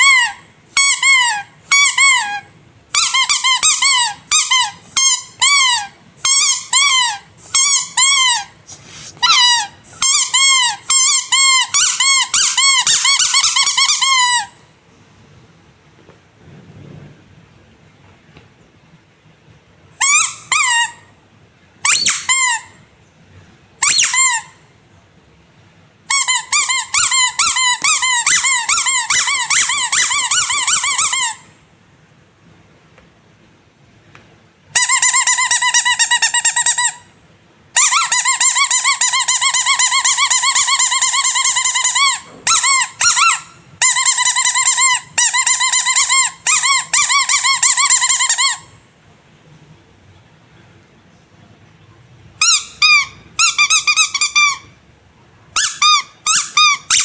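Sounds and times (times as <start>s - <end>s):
rubber squeaky toy squeaking: 0.0s - 14.6s, 20.0s - 21.1s, 21.8s - 22.8s, 23.8s - 24.7s, 26.1s - 31.6s, 34.7s - 37.1s, 37.7s - 48.8s, 52.4s - 54.8s, 55.6s - 57.0s.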